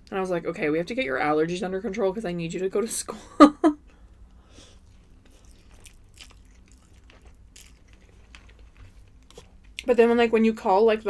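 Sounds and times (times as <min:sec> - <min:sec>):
chewing soft pasta: 0:03.8 - 0:10.2.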